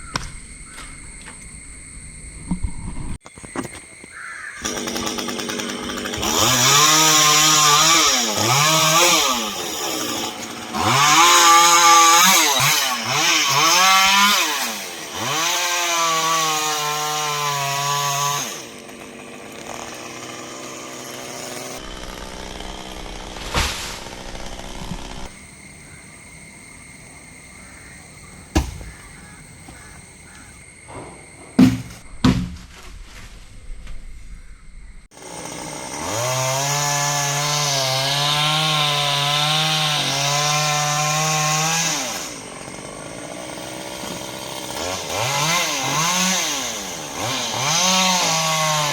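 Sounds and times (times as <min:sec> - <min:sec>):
chainsaw cutting wood: 0:04.6 - 0:25.4, 0:28.5 - 0:32.6, 0:35.1 - 0:48.9
sharp knocks: 0:28.5 - 0:30.0, 0:30.9 - 0:32.8.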